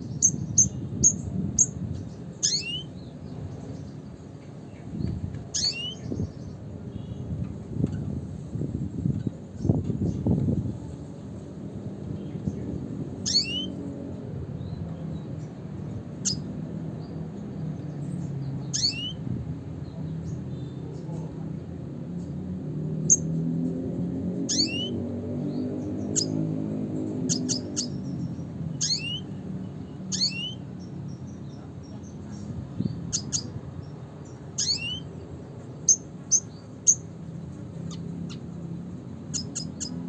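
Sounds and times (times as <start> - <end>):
bird high chirps: 0.0 - 4.2, 4.8 - 8.1, 12.2 - 13.9, 14.6 - 17.2, 17.8 - 21.3, 24.4 - 37.2, 39.2 - 40.0.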